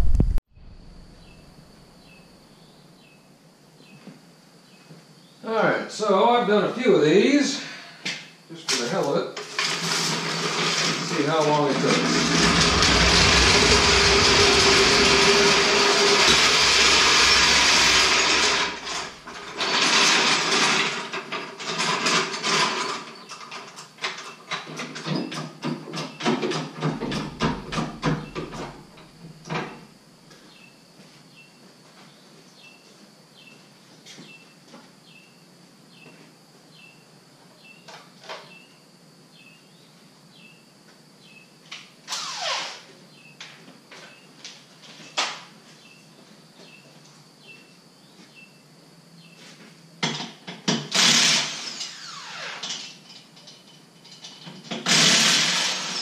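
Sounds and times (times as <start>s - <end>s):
power drill whirring: 9.6s - 11.2s, 11.8s - 21.0s, 42.1s - 42.8s, 50.9s - 52.9s, 54.8s - 56.0s.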